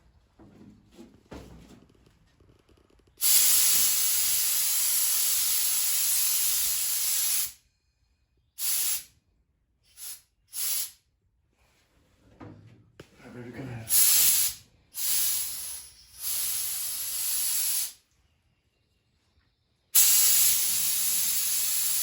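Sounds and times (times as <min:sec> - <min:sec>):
compressed air blow gun blasts: 0:03.2 - 0:07.6, 0:08.6 - 0:09.1, 0:09.9 - 0:11.0, 0:13.9 - 0:18.0, 0:20.0 - 0:22.0.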